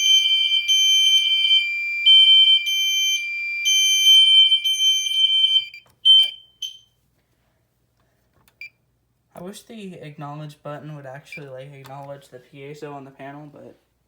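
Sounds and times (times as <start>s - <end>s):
fire alarm horn pulsing: 0.0s - 6.9s
fire alarm steady high tone: 0.0s - 7.0s.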